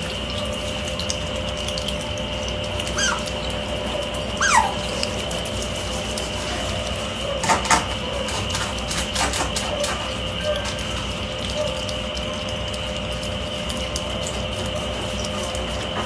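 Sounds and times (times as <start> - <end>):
steady background hum: 0.0 - 16.0
otters squeaking: 2.7 - 11.8.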